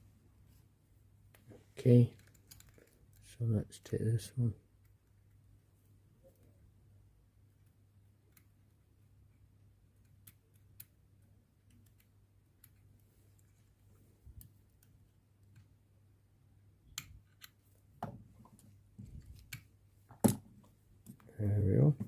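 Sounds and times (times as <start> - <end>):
screwdriver clicking on a watch: 7.6 - 9.4, 10.0 - 13.5.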